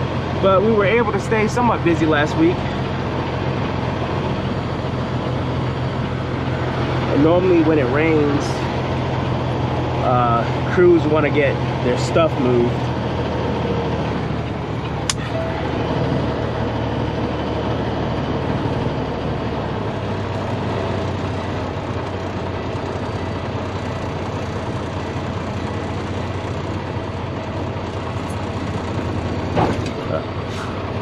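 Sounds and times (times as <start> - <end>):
heavy diesel engine running: 0.0 - 31.0.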